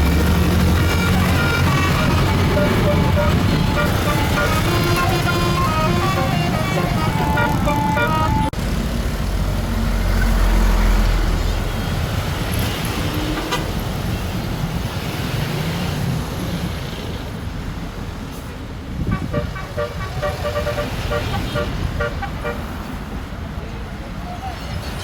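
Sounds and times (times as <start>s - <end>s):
bus horn playing a tune: 0.0s - 8.6s, 19.0s - 22.8s
bus engine running: 0.0s - 16.4s, 17.8s - 23.2s
road noise of passing traffic: 0.0s - 25.0s.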